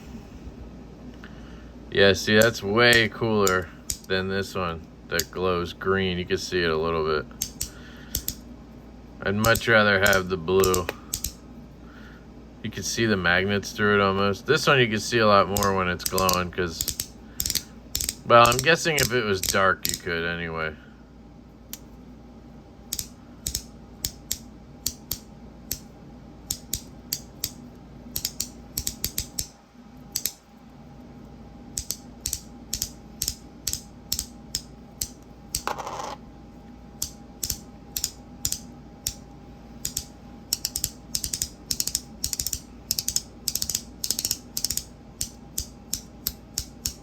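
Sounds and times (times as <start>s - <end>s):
magnetic fidget toy clicking: 7.4s - 8.4s, 9.4s - 11.4s, 15.4s - 20.1s, 22.9s - 25.9s, 26.5s - 30.4s, 31.7s - 35.7s, 37.0s - 39.2s, 39.8s - 47.0s.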